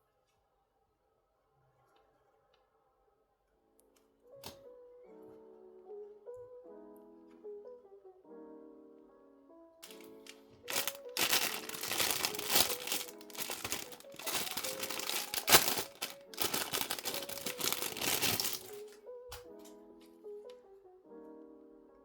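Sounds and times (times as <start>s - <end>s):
soft background music: 0.0s - 22.0s
packaging crinkling: 9.8s - 19.0s
packaging tearing: 9.8s - 19.0s.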